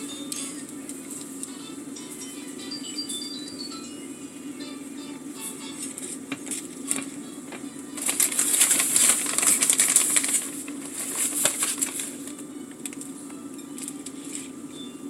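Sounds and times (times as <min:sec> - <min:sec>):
shredded cheese rustling: 0:08.0 - 0:13.0.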